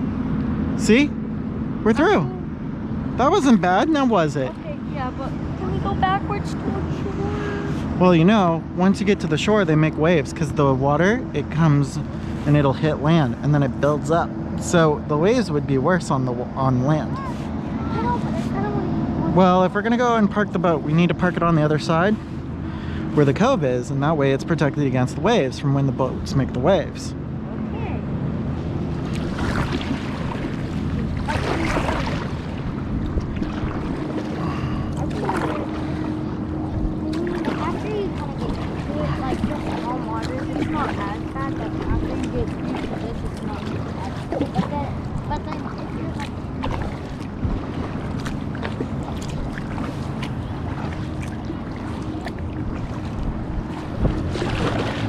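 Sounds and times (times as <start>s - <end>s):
water splashing against kayak: 3.2s - 25.5s, 28.4s - 55.0s
wind rumble on microphone: 20.2s - 55.0s.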